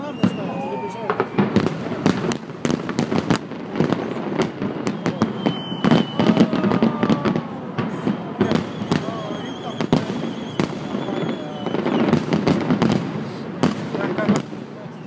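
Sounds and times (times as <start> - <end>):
fireworks bursting: 0.0 - 15.0.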